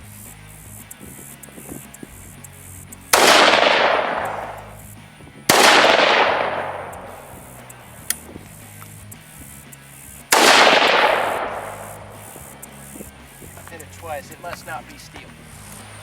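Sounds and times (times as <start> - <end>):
rifle shots echoing: 3.1 - 4.8, 5.5 - 8.3, 10.3 - 12.6.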